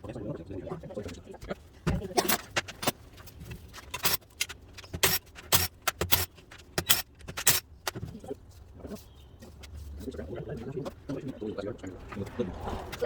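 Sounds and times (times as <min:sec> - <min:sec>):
tools and bolts handling noise: 0:01.9 - 0:10.1.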